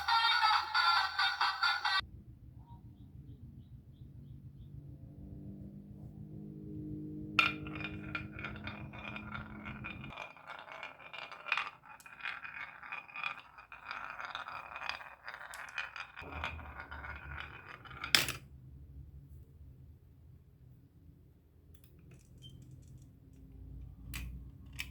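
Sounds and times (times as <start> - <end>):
marbles rattling down wooden track: 7.4 - 18.5.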